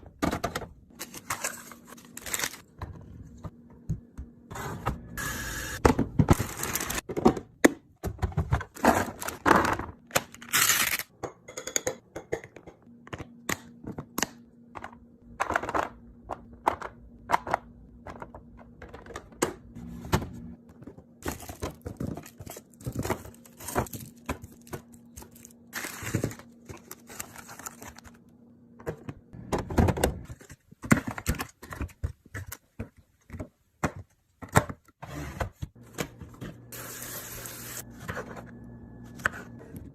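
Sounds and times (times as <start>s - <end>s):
food containers clicking and knocking: 0.0s - 1.5s, 11.2s - 19.7s
packaging crinkling: 21.2s - 28.2s.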